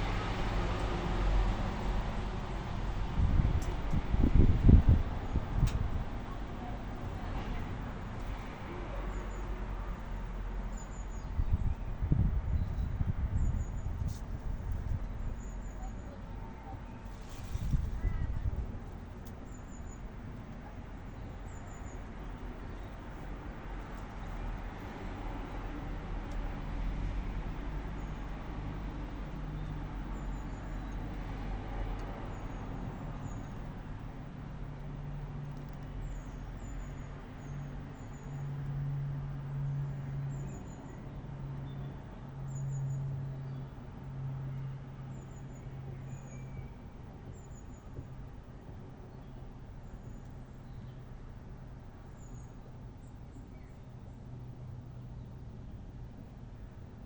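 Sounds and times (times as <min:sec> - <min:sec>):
distant road traffic rumble: 0:00.0 - 0:57.0
faint high bird chirps: 0:15.4 - 0:18.5.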